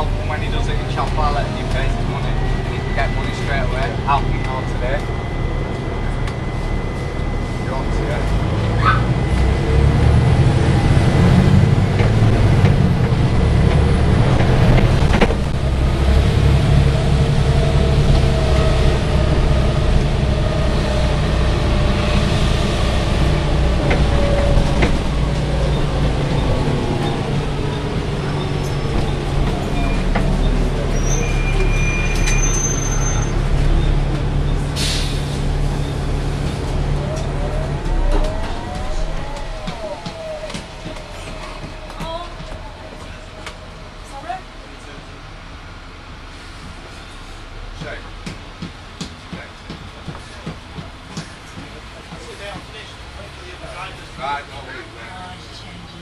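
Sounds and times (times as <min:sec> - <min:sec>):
falling whine: 0:00.0 - 0:45.1
bus engine and cooling fan: 0:00.0 - 0:56.0.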